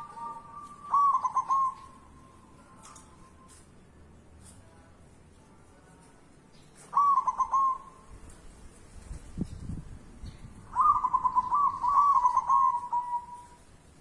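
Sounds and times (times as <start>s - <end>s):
dove cooing: 0.0s - 2.2s, 6.9s - 8.1s, 10.7s - 13.6s.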